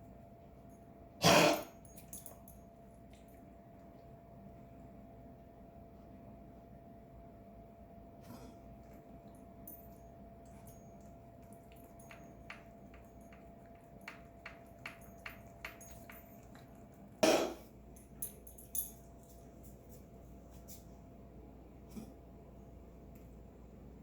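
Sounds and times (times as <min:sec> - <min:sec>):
pet coughing: 0:01.2 - 0:01.7, 0:17.2 - 0:17.7.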